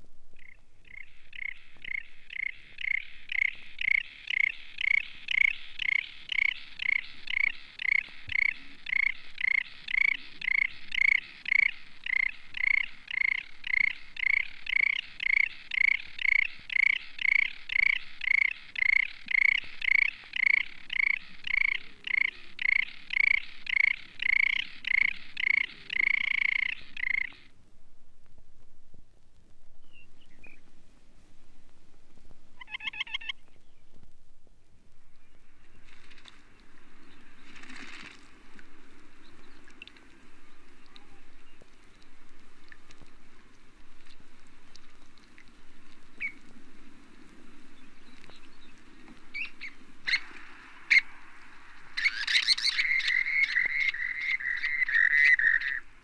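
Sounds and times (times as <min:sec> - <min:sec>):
sandpiper singing repeated notes: 0:00.4 - 0:27.5.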